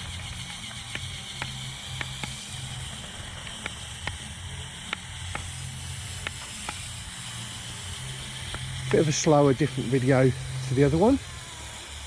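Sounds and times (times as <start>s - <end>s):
sharp plastic clicks: 0.0s - 7.0s
small electric motor humming: 0.0s - 12.0s.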